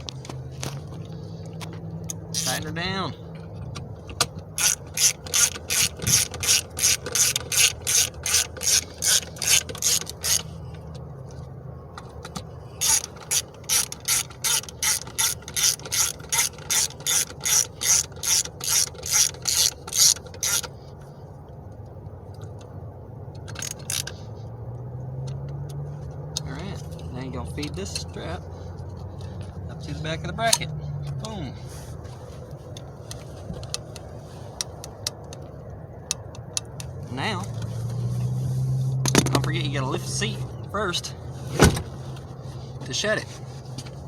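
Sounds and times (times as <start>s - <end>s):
ratchet clicking: 1.6s - 2.7s, 4.2s - 11.0s, 12.2s - 20.8s, 23.4s - 24.2s.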